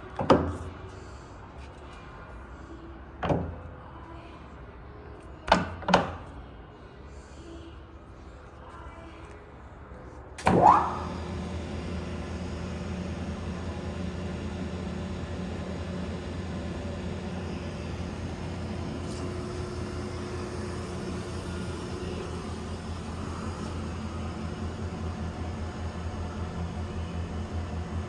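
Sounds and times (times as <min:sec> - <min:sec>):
lathe motor humming: 0:10.4 - 0:28.0.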